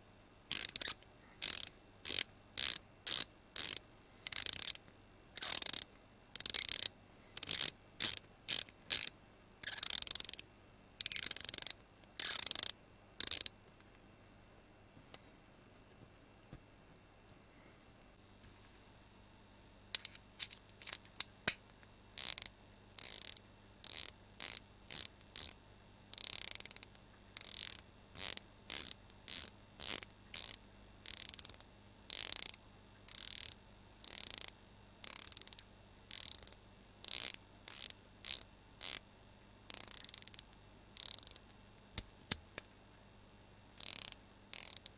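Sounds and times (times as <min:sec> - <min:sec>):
ratchet clicking: 0:00.5 - 0:04.8, 0:05.4 - 0:10.4, 0:11.0 - 0:13.5, 0:22.2 - 0:39.0, 0:39.7 - 0:41.5, 0:43.8 - 0:44.9
ratchet snap: 0:00.5 - 0:04.8, 0:05.4 - 0:10.4, 0:11.0 - 0:13.5, 0:22.2 - 0:39.0, 0:39.7 - 0:41.6, 0:43.8 - 0:44.9.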